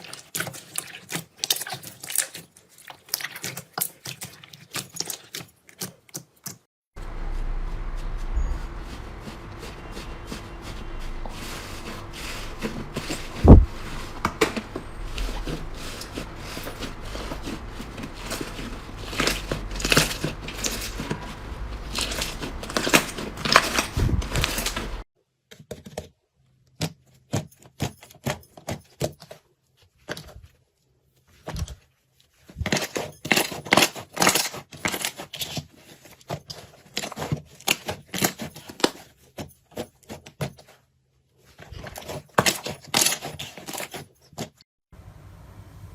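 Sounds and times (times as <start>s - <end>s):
loud thump: 13.4s - 14.5s.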